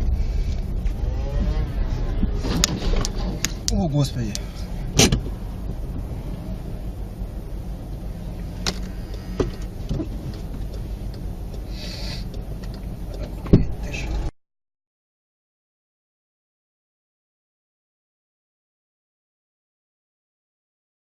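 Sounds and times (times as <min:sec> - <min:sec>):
vehicle engine rumbling: 0:00.0 - 0:14.4.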